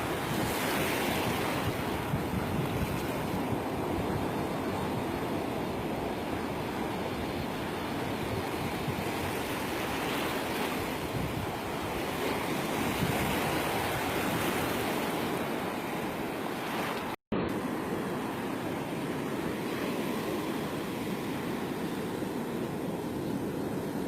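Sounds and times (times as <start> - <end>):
wind buffeting microphone: 0.0 - 16.4
surf breaking on a beach: 0.0 - 24.0.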